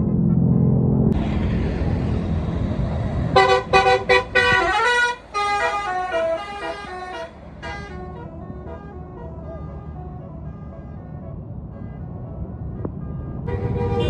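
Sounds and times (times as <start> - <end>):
bus engine rumbling: 0.0 - 14.0
musical bus horn playing a tune: 3.4 - 14.0.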